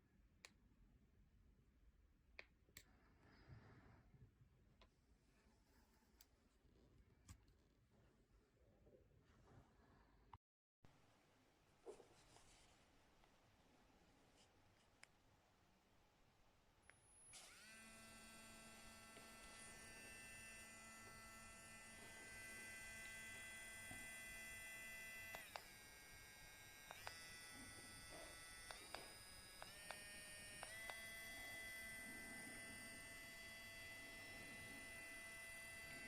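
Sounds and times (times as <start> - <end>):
electric nail drill whining: 16.9 - 36.0.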